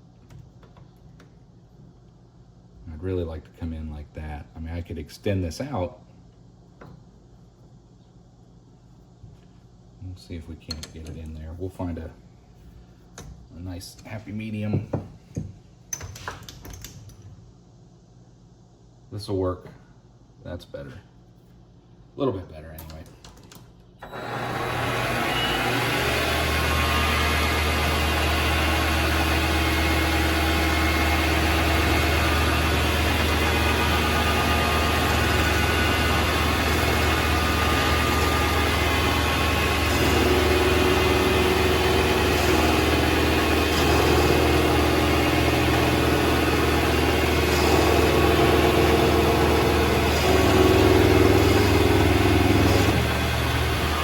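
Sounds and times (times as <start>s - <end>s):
lathe running: 24.0s - 54.0s.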